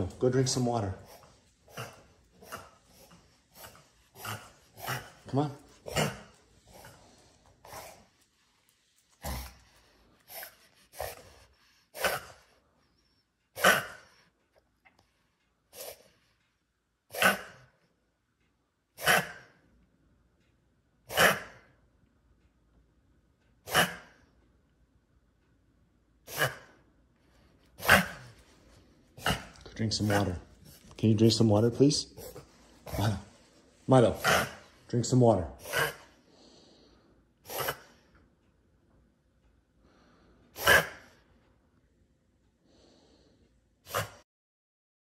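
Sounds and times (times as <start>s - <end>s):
dog coughing: 1.0s - 8.1s, 11.9s - 12.5s, 13.5s - 14.2s, 17.1s - 17.8s, 19.0s - 19.6s, 21.1s - 21.8s, 23.6s - 24.2s, 26.2s - 26.8s, 27.8s - 28.4s, 29.2s - 30.5s, 32.2s - 33.4s, 34.2s - 34.7s, 35.6s - 36.2s, 37.4s - 38.0s, 40.5s - 41.2s, 43.8s - 44.2s.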